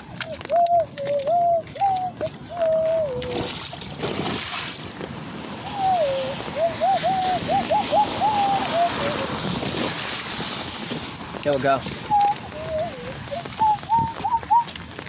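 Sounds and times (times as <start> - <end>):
storm wind and rain rushing: 0.0 - 15.0
gliding whistle-like notes: 12.1 - 14.6.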